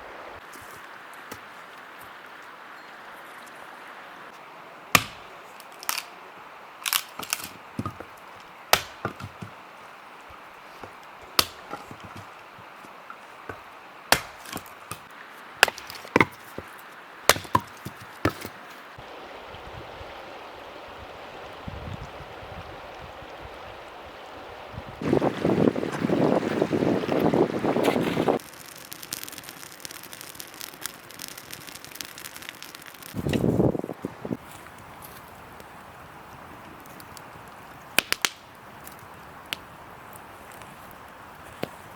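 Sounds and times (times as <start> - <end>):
steady hiss: 0.0 - 41.9
wood being chopped: 4.9 - 6.0, 6.8 - 9.6, 10.8 - 12.4, 13.4 - 18.6, 38.0 - 38.4.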